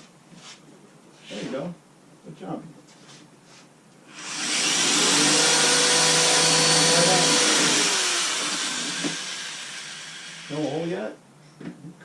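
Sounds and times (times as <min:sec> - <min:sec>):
electric drill boring into wood: 0:04.1 - 0:10.9.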